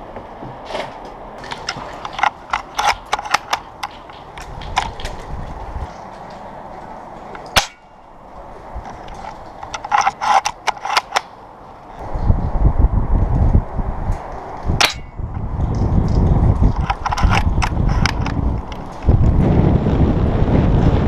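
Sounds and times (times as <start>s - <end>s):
airsoft gun shots: 14.8s - 15.2s.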